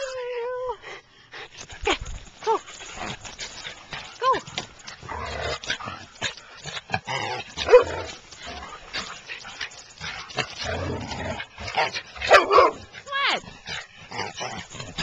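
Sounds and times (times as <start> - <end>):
scuffling handling noise: 1.6 - 6.6.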